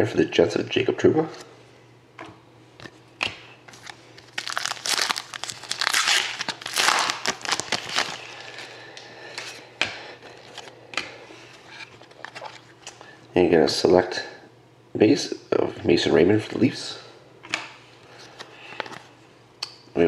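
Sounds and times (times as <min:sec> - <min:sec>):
cards rustling and clicking: 0:02.8 - 0:08.7
card pack wrapper tearing: 0:03.8 - 0:08.7.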